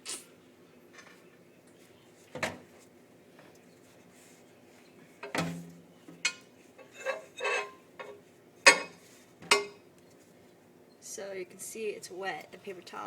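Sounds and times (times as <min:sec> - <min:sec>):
paper towel rustling: 0:03.7 - 0:05.2.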